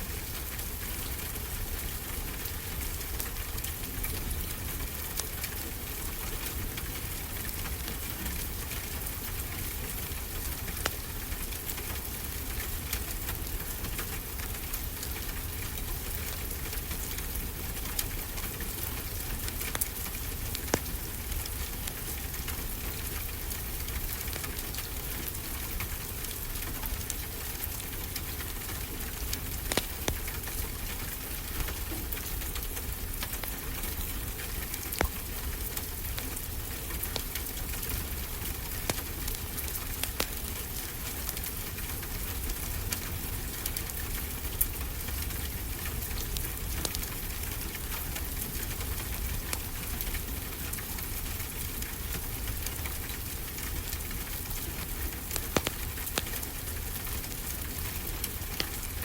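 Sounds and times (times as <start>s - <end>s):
steady rain falling: 0.0s - 59.0s
wood fire crackling: 0.0s - 59.0s.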